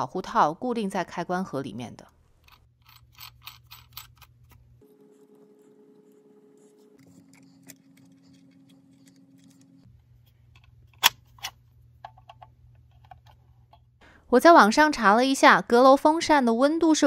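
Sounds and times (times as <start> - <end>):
faint low hum: 2.0 - 14.3
metal parts clicking and tapping: 2.4 - 4.6.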